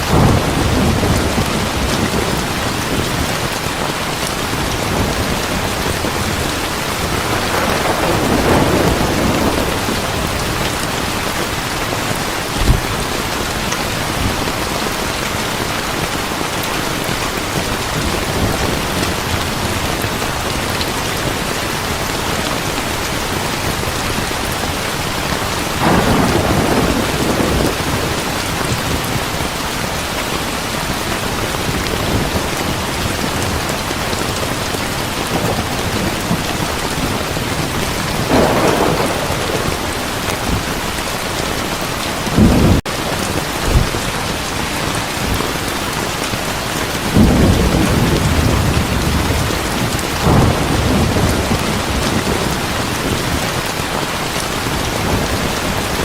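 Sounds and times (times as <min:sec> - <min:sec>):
heavy rain falling: 0:00.0 - 0:56.0
thunder rumbling: 0:00.0 - 0:56.0
sharp low thump: 0:12.6 - 0:13.0.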